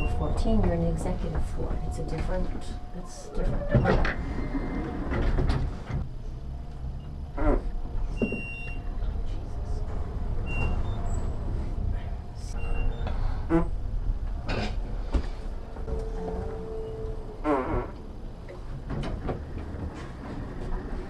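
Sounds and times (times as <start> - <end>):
lift car rumbling: 0.0 - 21.0.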